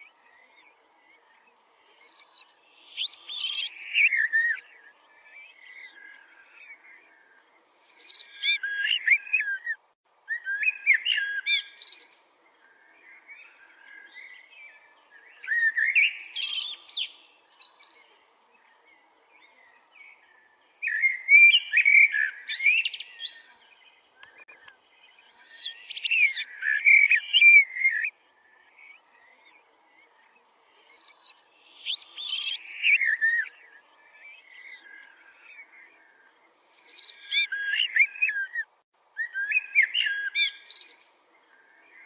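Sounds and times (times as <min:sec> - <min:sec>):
bird calling in shrill notes: 0:36.7 - 0:41.1.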